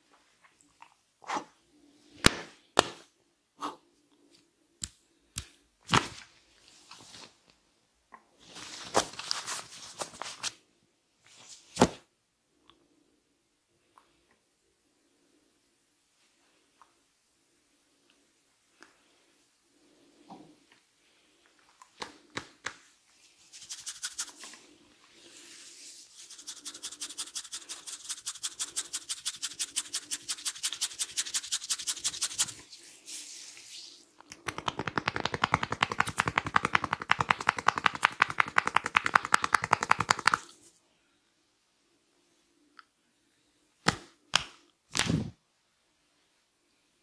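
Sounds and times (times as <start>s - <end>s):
hands rubbing through hair: 22.0s - 40.7s
fast slapping taps: 34.3s - 40.4s.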